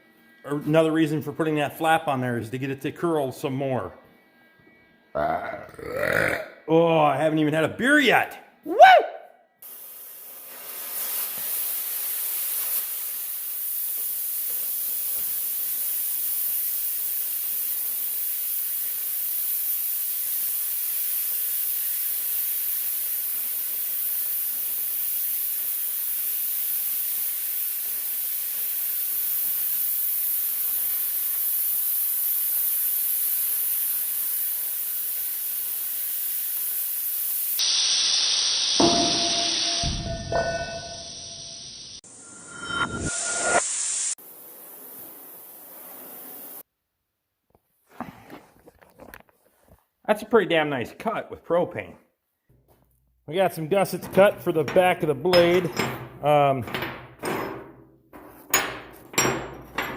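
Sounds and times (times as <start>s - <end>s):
cutting torch hissing: 9.6s - 46.6s.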